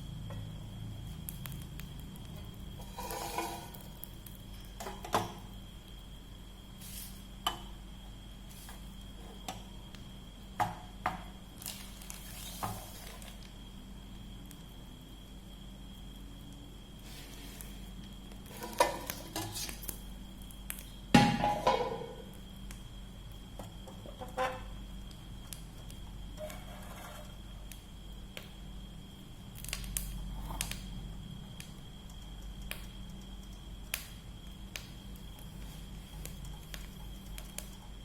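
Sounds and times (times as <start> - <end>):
pots and dishes clanking: 2.8 - 3.8, 21.2 - 22.1.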